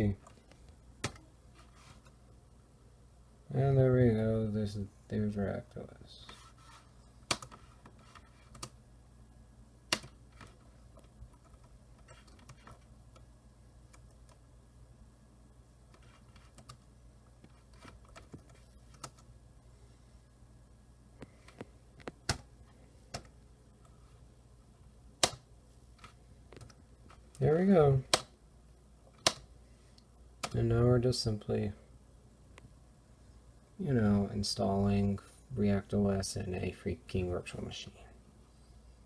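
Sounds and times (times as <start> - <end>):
steady low hum: 0.0 - 39.0
keyboard and mouse clicks: 0.2 - 1.3, 7.2 - 8.8, 9.9 - 13.3, 13.9 - 14.4, 15.9 - 16.8, 17.4 - 19.3, 23.1 - 23.4, 25.2 - 27.4, 29.1 - 30.6.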